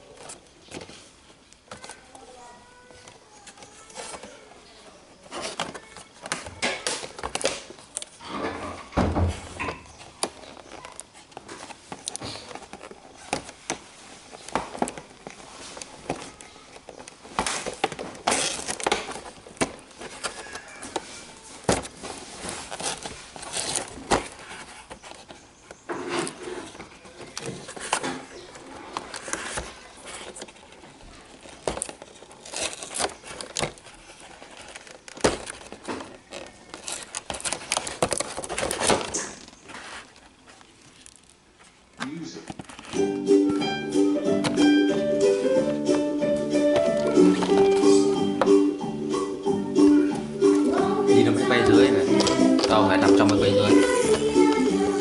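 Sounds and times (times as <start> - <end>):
crinkling rustles: 0.0 - 48.6, 50.1 - 55.0
handling clicks and knocks: 5.2 - 41.5, 42.4 - 48.6.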